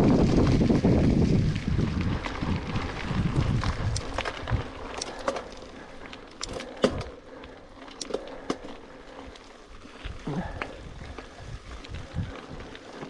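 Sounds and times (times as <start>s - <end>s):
wind buffeting microphone: 0.0s - 5.6s, 10.0s - 12.8s
bike rattling over trail: 0.0s - 13.0s.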